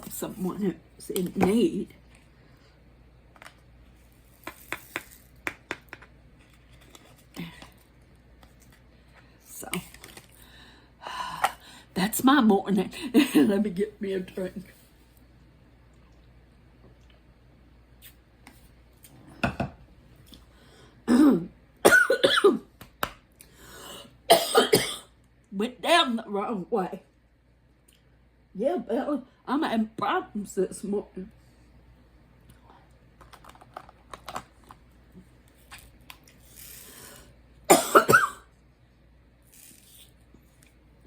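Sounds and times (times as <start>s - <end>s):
woman coughing: 21.1s - 22.7s, 24.3s - 25.1s, 37.7s - 38.5s.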